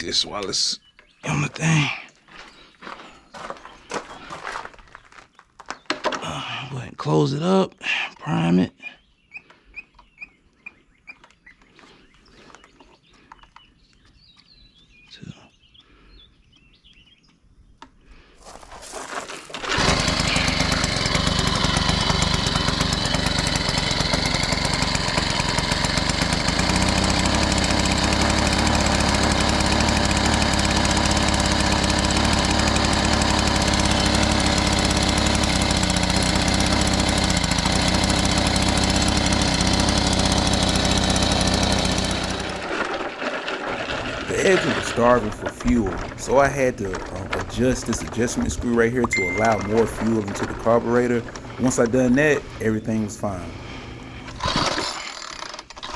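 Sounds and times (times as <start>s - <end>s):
edger engine running: 19.5s - 55.9s.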